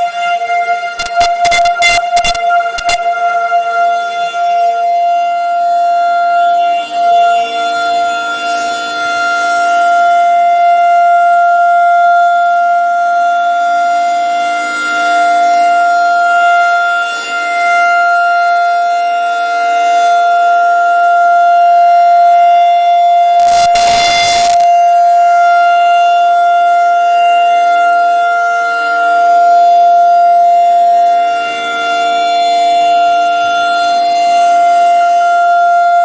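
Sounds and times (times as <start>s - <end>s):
warning siren steady tone: 0.0s - 36.0s.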